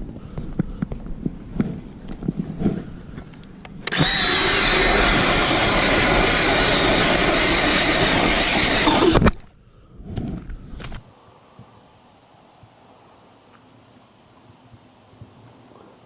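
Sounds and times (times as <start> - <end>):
ice auger whining: 3.8 - 9.4.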